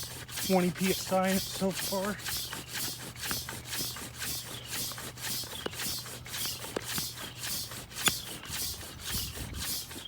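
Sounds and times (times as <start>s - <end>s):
air pump hissing puffs: 0.0s - 10.0s.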